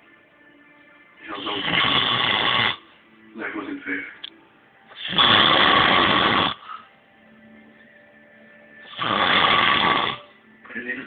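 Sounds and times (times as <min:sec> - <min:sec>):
person snoring loudly: 0:01.4 - 0:02.8, 0:05.0 - 0:06.7, 0:08.8 - 0:10.4.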